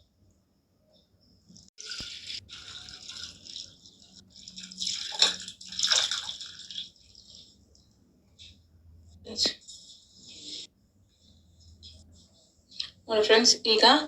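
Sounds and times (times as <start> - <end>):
liquid pouring and splashing: 1.8 - 7.6.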